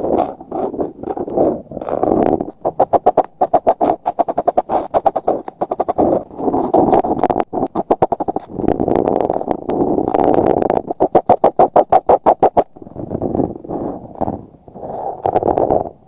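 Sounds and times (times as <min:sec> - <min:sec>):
colouring strokes on paper: 0:01.9 - 0:08.6, 0:10.9 - 0:12.7.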